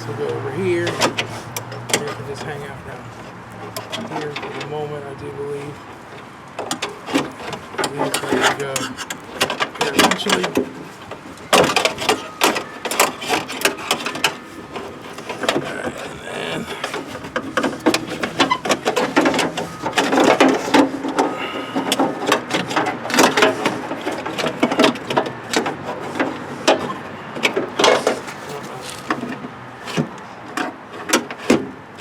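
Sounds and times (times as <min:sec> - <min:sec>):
car door parts clicking and rattling: 0:06.1 - 0:16.2, 0:16.8 - 0:31.8.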